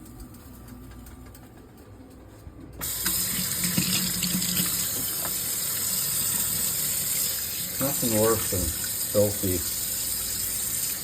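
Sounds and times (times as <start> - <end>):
water running into sink: 2.8 - 11.0.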